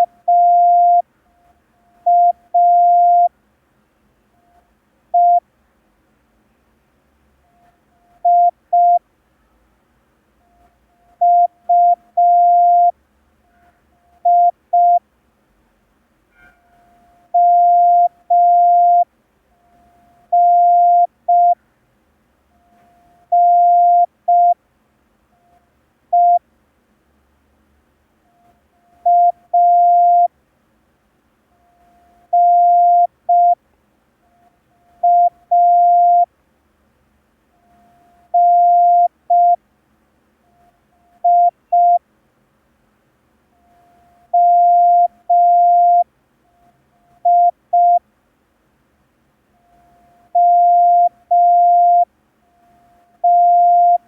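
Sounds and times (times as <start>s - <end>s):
morse code tone: 0.0s - 1.0s, 2.0s - 3.3s, 5.2s - 5.4s, 7.5s - 9.0s, 11.2s - 12.9s, 14.2s - 15.0s, 17.4s - 19.1s, 20.3s - 21.6s, 22.6s - 24.6s, 26.2s - 26.4s, 29.0s - 30.3s, 31.6s - 33.6s, 34.3s - 36.3s, 37.7s - 39.6s, 40.5s - 42.0s, 43.6s - 48.0s, 49.6s - 54.0s.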